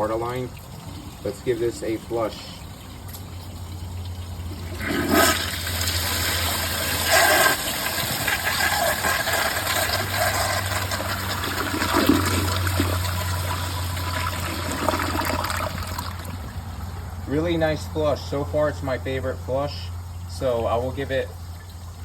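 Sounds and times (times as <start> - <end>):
toilet flushing: 3.6 - 16.6
water gurgling down bowl: 3.8 - 16.7.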